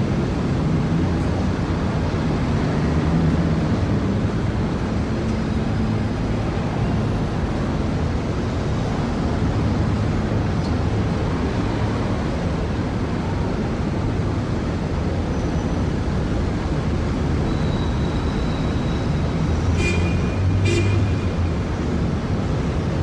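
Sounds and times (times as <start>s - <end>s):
heavy city traffic: 0.0s - 23.0s
car horn honks: 19.7s - 21.5s.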